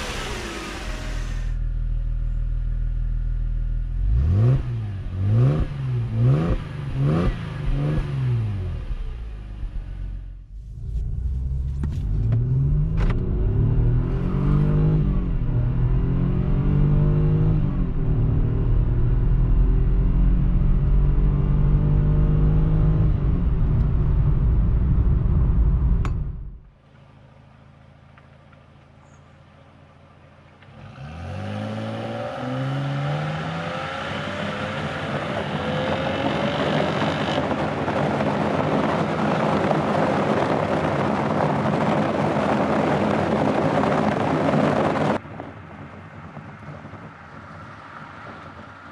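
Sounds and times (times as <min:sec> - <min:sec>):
car engine accelerating: 0:00.0 - 0:26.7
wind and road noise: 0:00.0 - 0:48.9
faint engine hum: 0:23.2 - 0:30.8.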